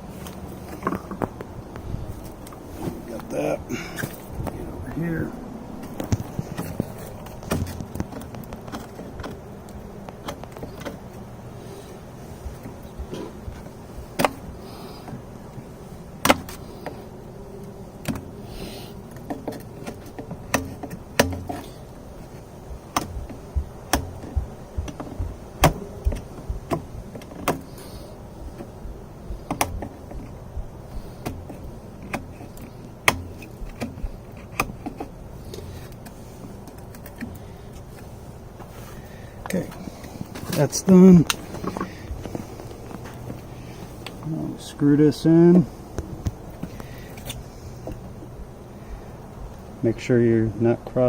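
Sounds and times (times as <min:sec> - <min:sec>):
steady low hum: 0:00.0 - 0:51.0
clicks and knocks on plastic fittings: 0:29.5 - 0:30.4.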